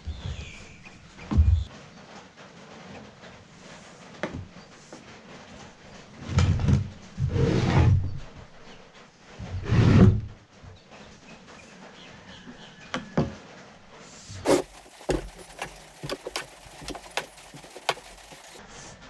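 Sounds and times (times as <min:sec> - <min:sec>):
plastic parts clicking and knocking: 0:14.5 - 0:18.6.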